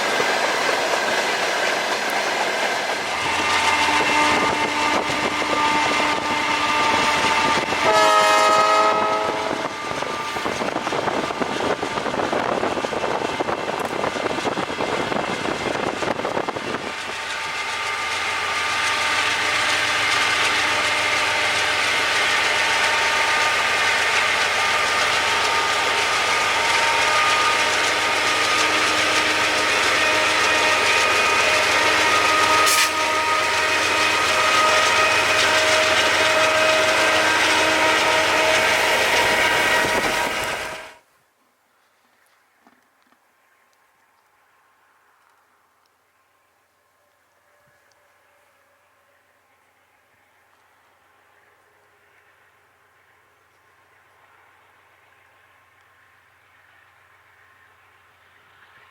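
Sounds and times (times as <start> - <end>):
locomotive engine and wheels: 0.0 - 58.9
locomotive horn blast: 3.2 - 10.6, 24.6 - 41.0.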